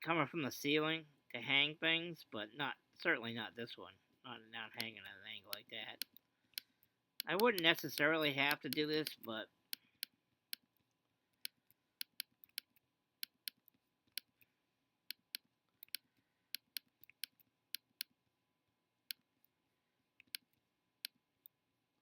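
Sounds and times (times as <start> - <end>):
computer mouse clicking: 11.4 - 14.4, 15.1 - 18.1, 20.2 - 21.6.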